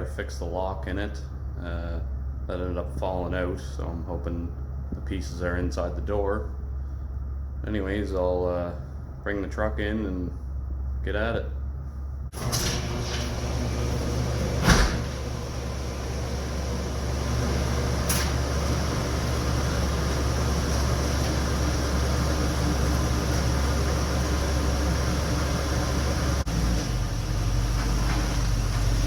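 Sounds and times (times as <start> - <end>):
pickup engine running: 11.7 - 29.0.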